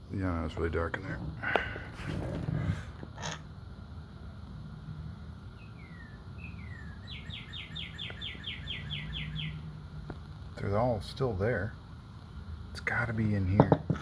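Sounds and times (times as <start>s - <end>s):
songbird singing: 4.0s - 13.7s.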